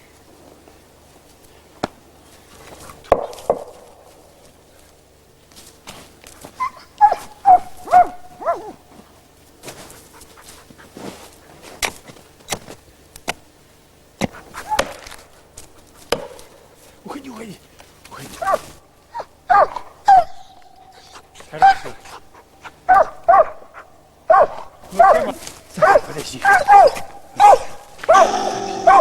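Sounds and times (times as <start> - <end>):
dog yelping barks: 6.6 - 8.8, 18.4 - 29.0.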